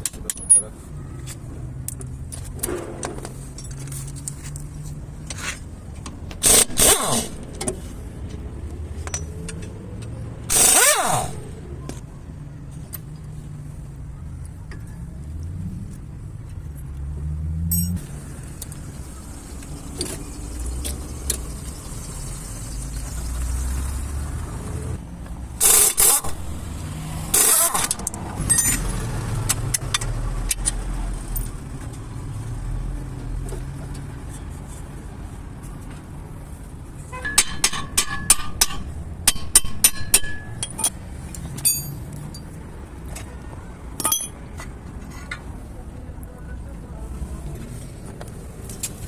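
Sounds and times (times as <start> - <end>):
metallic clinks: 17.7 - 18.0, 37.2 - 41.0, 41.6 - 42.6, 44.0 - 44.4.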